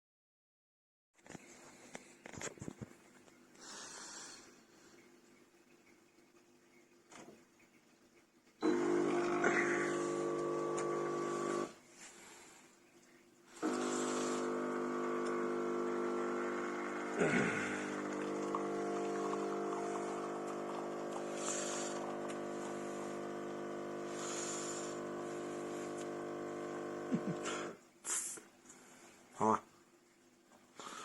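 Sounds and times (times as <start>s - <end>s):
espresso machine pump humming: 8.6s - 11.9s, 12.7s - 27.8s.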